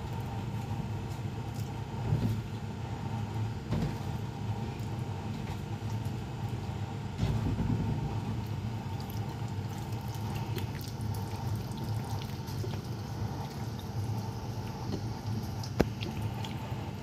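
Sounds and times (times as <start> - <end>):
steady low hum: 0.0 - 17.0
wet squelching of meat: 8.5 - 16.8.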